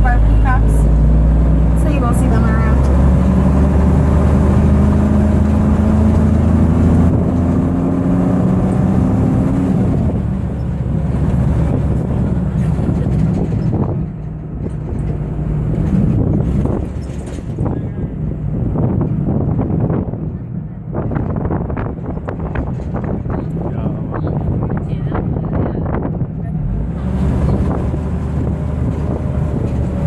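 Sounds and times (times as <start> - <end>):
road and wind noise: 0.0 - 30.0
vehicle engine running: 0.0 - 30.0.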